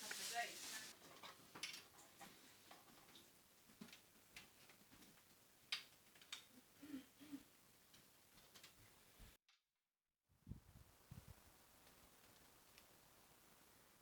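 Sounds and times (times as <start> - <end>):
faint irregular clicks and taps: 1.0 - 6.5.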